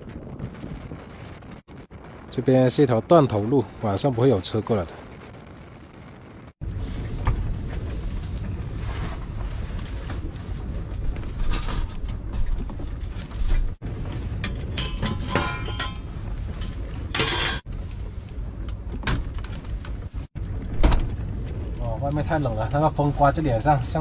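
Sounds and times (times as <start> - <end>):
wind buffeting microphone: 0.0 - 24.0
dishes clinking and clattering: 14.4 - 17.7.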